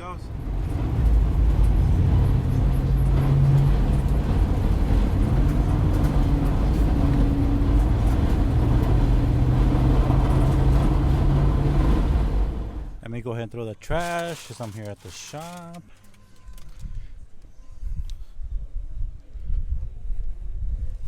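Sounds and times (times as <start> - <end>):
van engine hum: 0.0 - 13.0
road rumble: 0.0 - 13.1.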